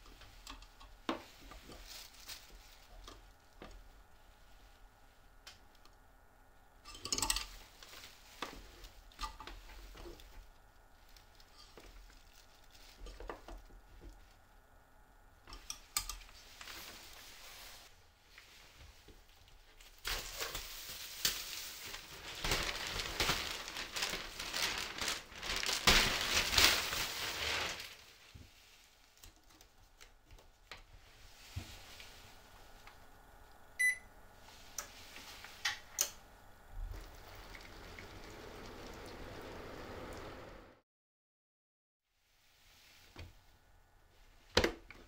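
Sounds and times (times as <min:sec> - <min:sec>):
faint steady hum: 0:00.0 - 0:40.8
short electronic beep: 0:33.8 - 0:34.0
loud hissing crackling noise: 0:34.4 - 0:40.8.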